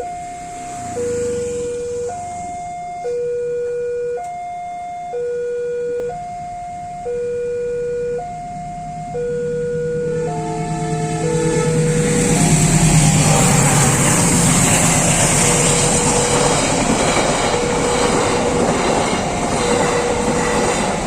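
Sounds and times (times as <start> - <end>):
two-tone crossing alarm: 0.0 - 21.0
low rumble: 6.0 - 21.0.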